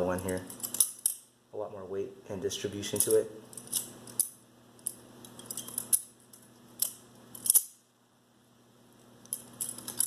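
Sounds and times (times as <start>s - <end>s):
knife handles clacking: 4.8s - 7.6s.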